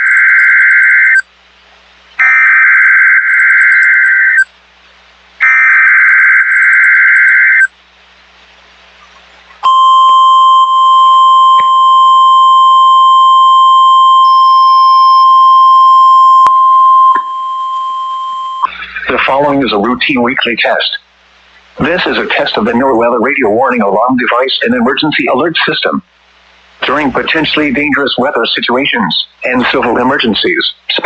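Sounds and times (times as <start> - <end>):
steady warning alarm tone: 2.2 - 4.5, 5.4 - 7.7, 9.6 - 19.2.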